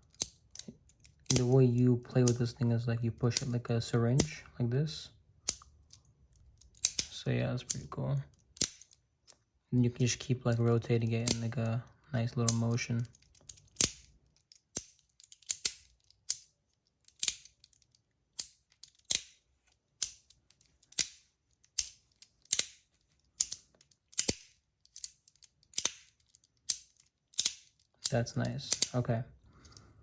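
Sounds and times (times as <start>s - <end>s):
metal fidget toy clicking: 6.6s - 7.8s, 12.5s - 16.5s, 23.4s - 29.1s.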